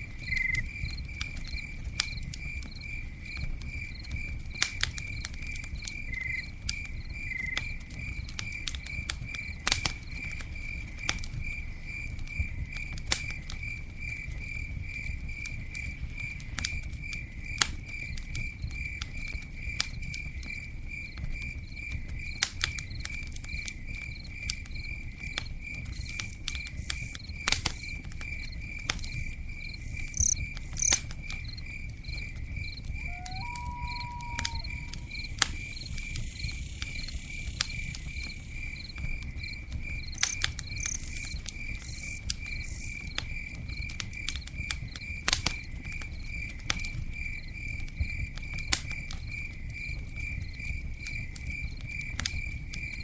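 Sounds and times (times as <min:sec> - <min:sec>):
campfire crackling and popping: 0:00.0 - 0:53.0
cricket chirping: 0:00.0 - 0:53.0.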